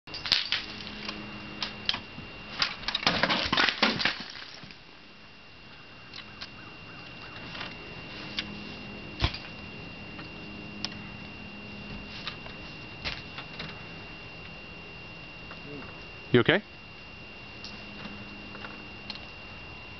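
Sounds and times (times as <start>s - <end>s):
icicles breaking: 0.1s - 1.0s, 2.6s - 4.9s
ice chunks falling: 3.0s - 4.8s.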